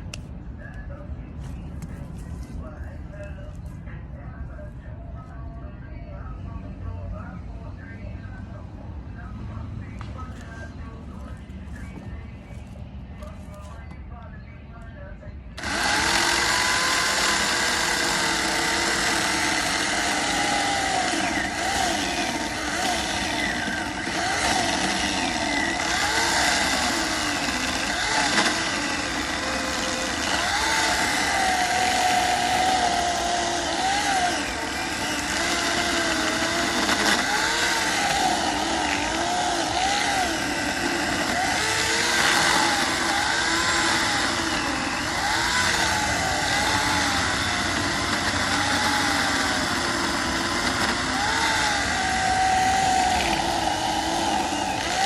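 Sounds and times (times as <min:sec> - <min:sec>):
electric chainsaw cutting wood: 0:15.6 - 0:55.0.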